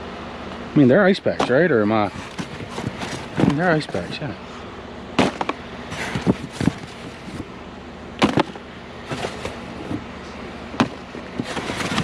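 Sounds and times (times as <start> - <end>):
plastic rustling: 2.0 - 4.2, 5.2 - 7.4, 8.3 - 10.0, 11.2 - 12.0
plastic ice packs clattering: 2.0 - 4.3, 5.2 - 7.4, 8.2 - 10.0, 10.8 - 12.0.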